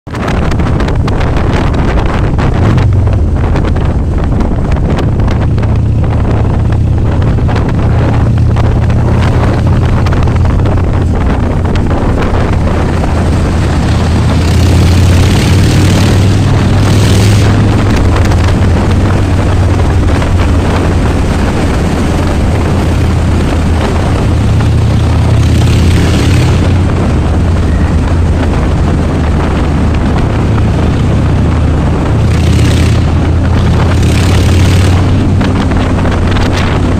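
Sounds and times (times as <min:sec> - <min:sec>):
motorcycle engine rumbling: 0:00.1 - 0:36.9.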